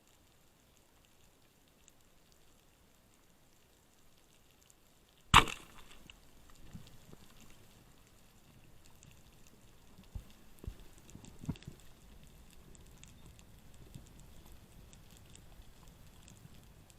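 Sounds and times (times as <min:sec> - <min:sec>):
faint underwater crackling: 0:00.0 - 0:16.9
speargun crack underwater: 0:05.3 - 0:06.8.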